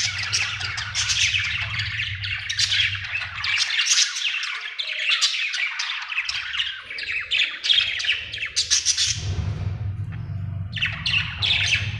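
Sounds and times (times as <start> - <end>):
low hum: 0.0 - 3.7, 9.0 - 11.9.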